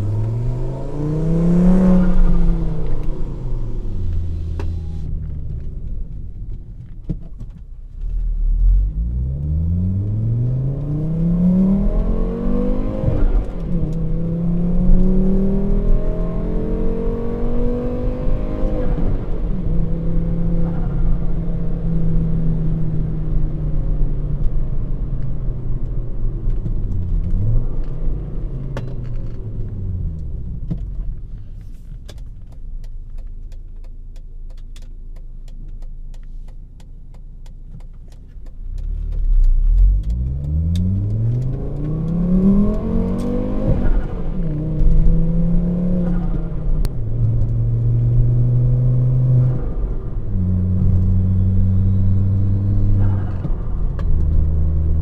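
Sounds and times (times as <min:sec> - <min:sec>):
car engine revving: 0:00.0 - 0:05.9, 0:08.3 - 0:25.0, 0:37.4 - 0:55.0.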